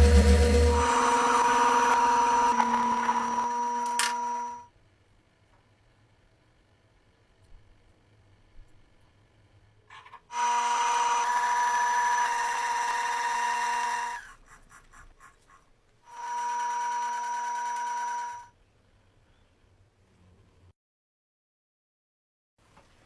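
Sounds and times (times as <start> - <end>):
small motor running: 0.0 - 4.6, 10.3 - 14.4, 16.1 - 18.5.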